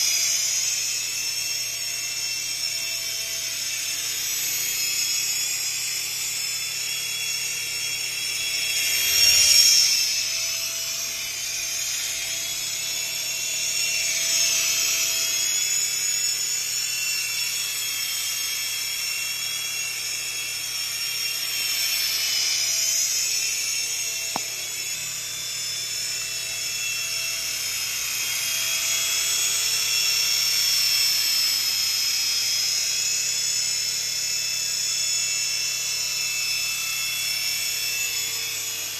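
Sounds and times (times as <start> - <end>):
toy helicopter motors whining: 0.0 - 38.9
sharp click: 24.3 - 24.8.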